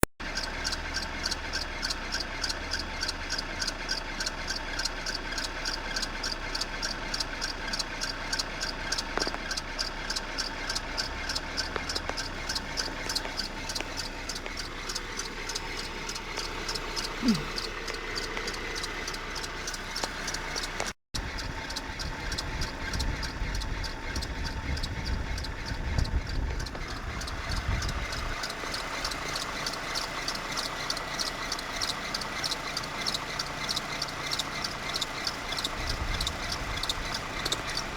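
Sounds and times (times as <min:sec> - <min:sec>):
fast even ticking: 0:00.0 - 0:37.9
petrol engine running: 0:00.0 - 0:37.9
deep uneven rumble: 0:20.8 - 0:29.5.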